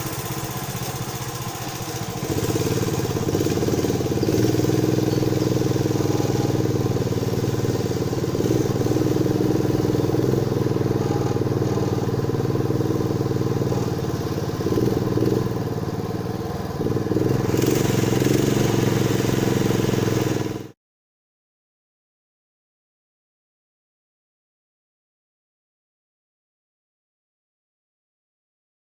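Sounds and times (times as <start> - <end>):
boat engine running: 0.0 - 20.8.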